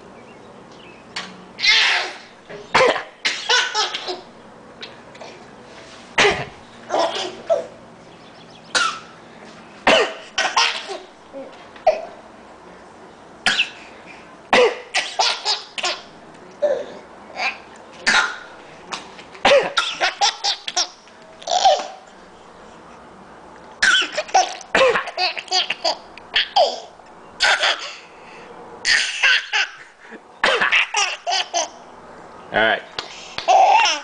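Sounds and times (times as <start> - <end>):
child giggling and coughing: 6.2 - 7.7, 19.4 - 20.1.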